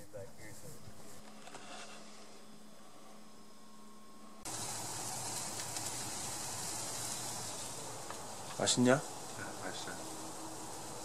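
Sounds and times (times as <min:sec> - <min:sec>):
background hum and hiss: 0:00.0 - 0:11.0
loud even hiss: 0:04.4 - 0:11.0.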